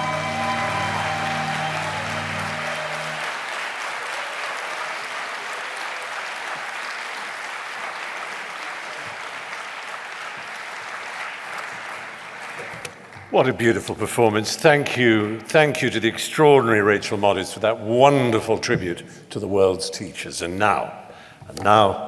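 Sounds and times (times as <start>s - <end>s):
held music chord: 0.0s - 3.3s
audience applauding: 0.0s - 13.3s.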